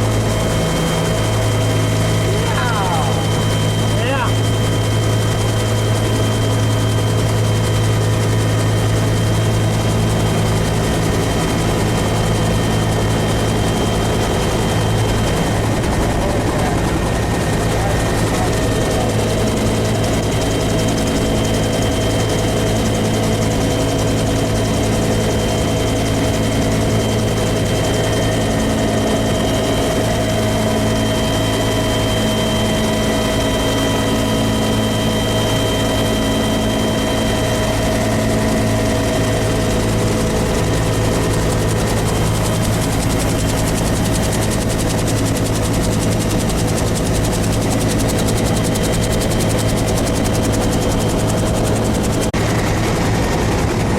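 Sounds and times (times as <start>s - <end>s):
high steady whine: 0.0s - 10.4s
helicopter engine and rotor: 0.0s - 53.9s.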